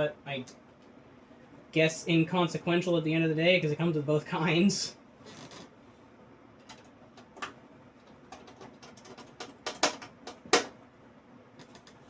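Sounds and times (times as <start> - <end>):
screws clicking in computer case: 8.3 - 10.7.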